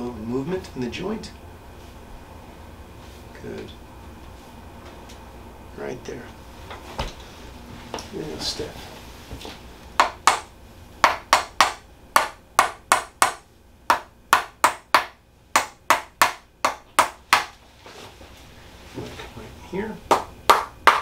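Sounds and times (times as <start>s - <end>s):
sharp percussive tapping: 20.1s - 21.0s.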